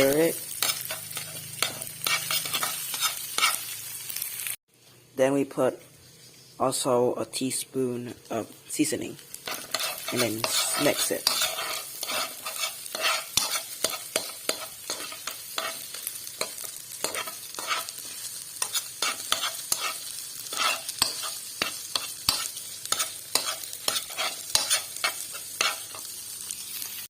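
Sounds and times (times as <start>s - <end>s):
utensil scraping a pan: 0.0s - 3.7s, 9.4s - 26.1s
food sizzling: 0.0s - 27.0s.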